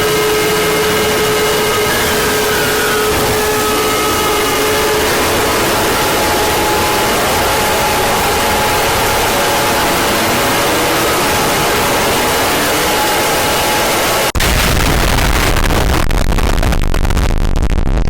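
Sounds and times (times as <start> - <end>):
faint steady tones: 0.0 - 14.4
slow sliding pitches: 0.0 - 14.4
harsh static alarm noise: 0.0 - 15.1
deep rumbling noise: 0.0 - 18.0.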